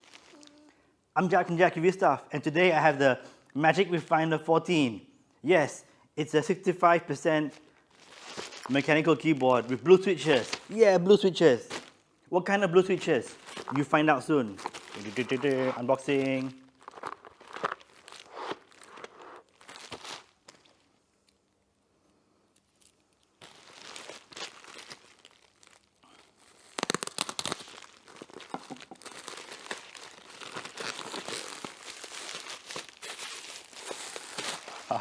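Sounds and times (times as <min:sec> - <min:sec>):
plastic wrapping crinkling: 0:00.0 - 0:00.7, 0:07.2 - 0:21.4, 0:22.5 - 0:35.0.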